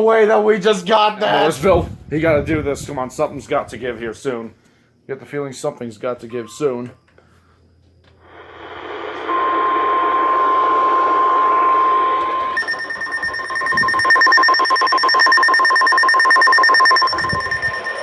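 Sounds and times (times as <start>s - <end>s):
static hiss: 8.2s - 9.9s
steady beep tone: 12.0s - 18.0s
alert tone pulsing rapidly: 12.4s - 18.0s.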